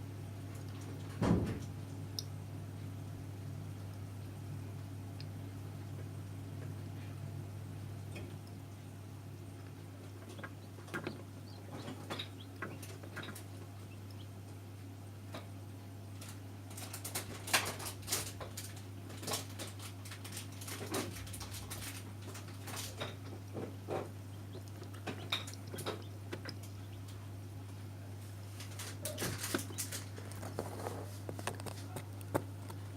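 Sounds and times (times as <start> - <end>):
steady low hum: 0.0 - 32.9
chicks tapping and scratching: 8.0 - 32.9.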